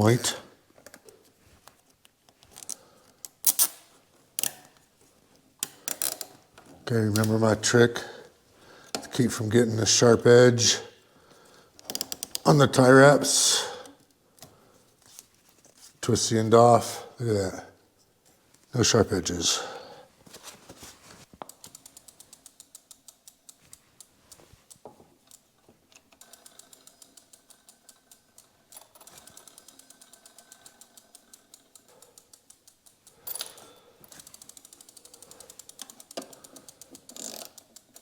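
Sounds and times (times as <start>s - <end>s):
rapid ratcheting clicks: 5.6s - 6.4s, 11.8s - 12.6s, 21.4s - 38.0s.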